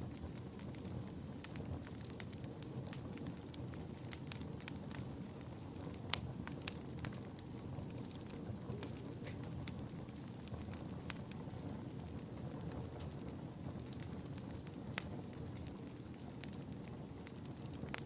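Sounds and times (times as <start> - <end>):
fire flames rumbling: 0.0 - 18.0
wood fire crackling and popping: 0.0 - 18.0.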